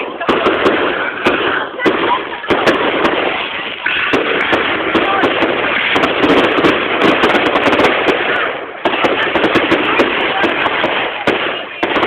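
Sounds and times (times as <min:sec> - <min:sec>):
fireworks crackling: 0:00.0 - 0:12.0.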